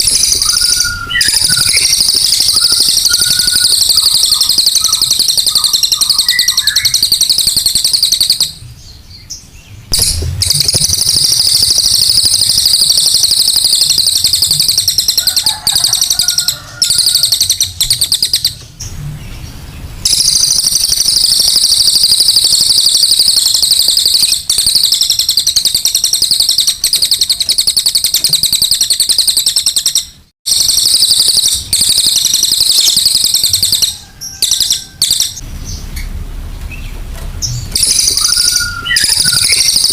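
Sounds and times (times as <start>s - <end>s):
bird harsh chattering call: 0.0s - 8.6s, 9.9s - 18.6s, 37.4s - 39.9s.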